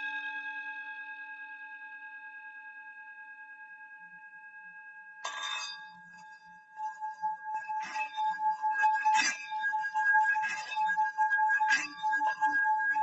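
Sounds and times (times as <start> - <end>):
sharp clinking on metal: 5.2 - 5.9.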